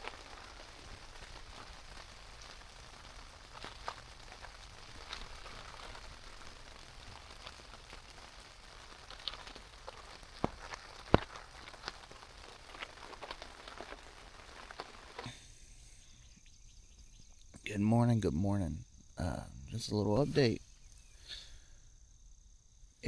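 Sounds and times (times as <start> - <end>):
raindrop taps: 0.0 - 15.4
rain falling on a tent: 0.0 - 20.6.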